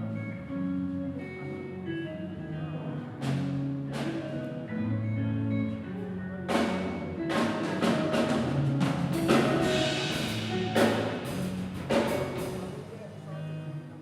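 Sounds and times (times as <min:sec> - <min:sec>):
low bass notes: 0:00.0 - 0:14.0
drum kit played hard: 0:06.4 - 0:12.9.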